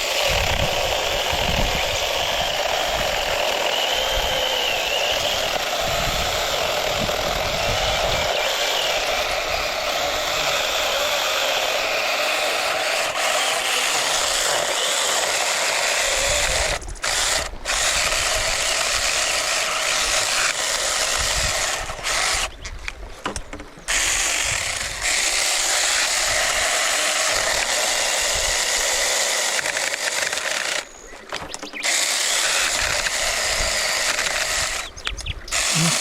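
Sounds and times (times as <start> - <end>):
power tool running: 0.0 - 22.5, 31.8 - 34.8, 35.5 - 36.0.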